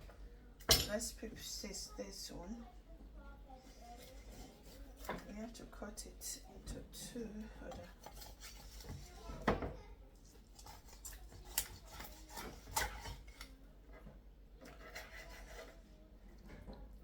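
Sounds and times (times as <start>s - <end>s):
soft rubbing: 3.5s - 5.1s
knife cutting onion: 14.7s - 15.7s.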